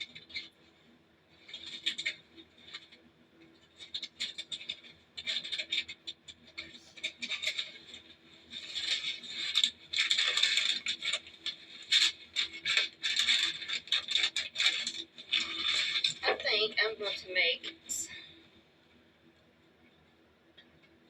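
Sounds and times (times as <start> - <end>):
packages scraping and rattling: 1.4 - 3.0, 3.6 - 16.7.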